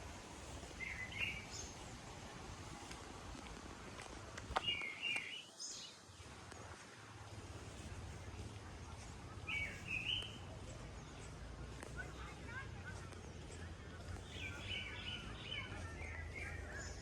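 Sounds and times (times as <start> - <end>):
steady noisy hiss: 0.0 - 10.4.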